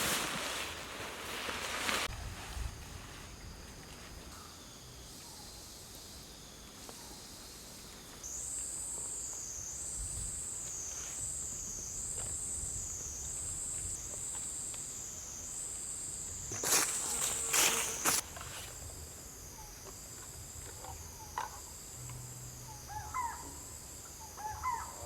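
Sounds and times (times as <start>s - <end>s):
background insect hum: 0.0s - 25.0s
insect buzzing trill: 7.2s - 25.0s.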